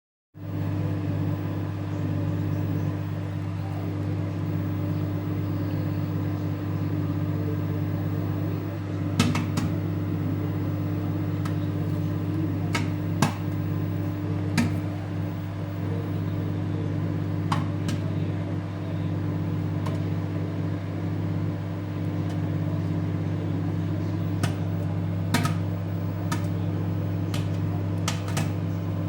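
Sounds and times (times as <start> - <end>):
microwave oven humming: 0.4 - 29.0
popcorn kernels popping: 9.1 - 9.8, 11.3 - 15.3, 17.2 - 18.2, 21.8 - 28.8.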